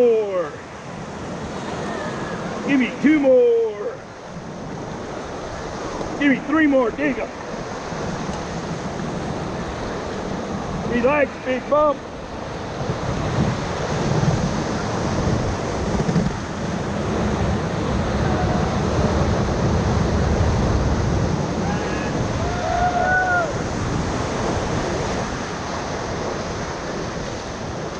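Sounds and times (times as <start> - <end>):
rushing whitewater: 0.0 - 27.9
wind buffeting microphone: 12.0 - 27.9.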